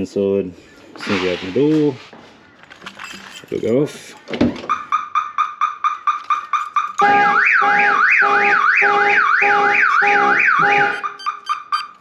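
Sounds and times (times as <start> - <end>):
car alarm siren: 4.7 - 12.0
car horn honking in pulses: 7.0 - 11.9.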